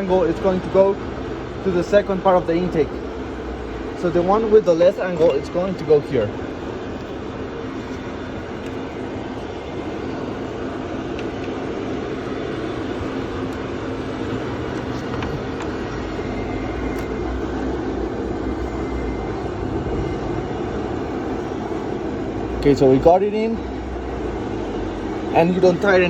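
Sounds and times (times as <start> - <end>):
mechanical drone: 0.0 - 26.0.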